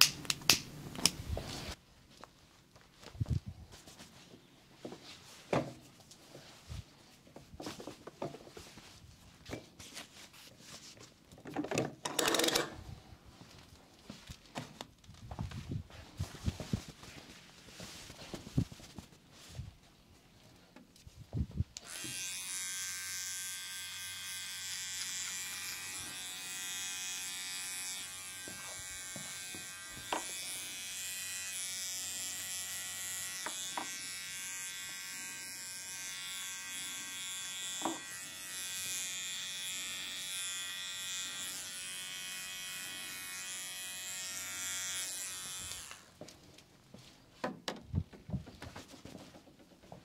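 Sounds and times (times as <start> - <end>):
electric razor buzzing: 21.8 - 46.2.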